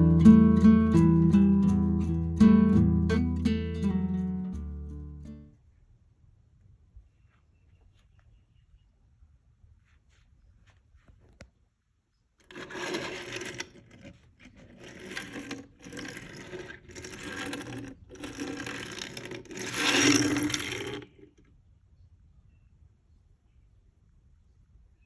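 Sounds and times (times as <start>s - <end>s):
pencil scratching on paper: 12.5s - 21.0s.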